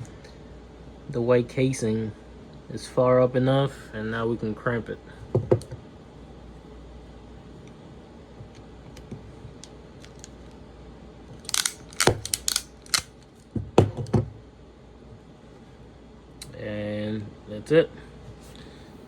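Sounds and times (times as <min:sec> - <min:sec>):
crimping tool clicks and crunches: 0:11.4 - 0:13.1.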